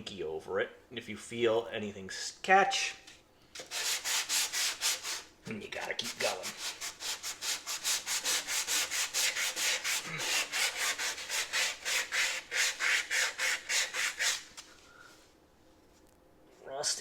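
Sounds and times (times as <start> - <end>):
hand sanding strokes: 3.6 - 5.3, 5.9 - 14.7.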